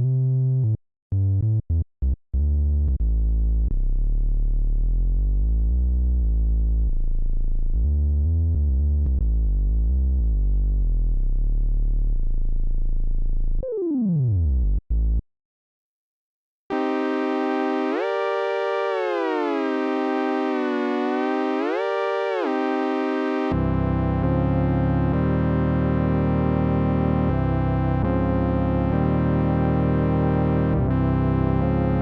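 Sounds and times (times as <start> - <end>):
synthesizer playing low notes: 16.7 - 32.0.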